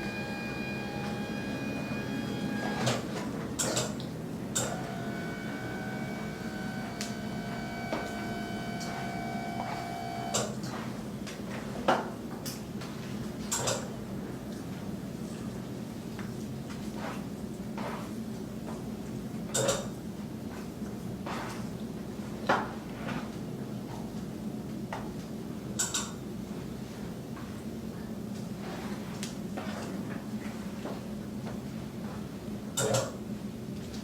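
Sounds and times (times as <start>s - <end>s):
low hum with held tones: 0.0s - 3.2s, 4.2s - 10.6s.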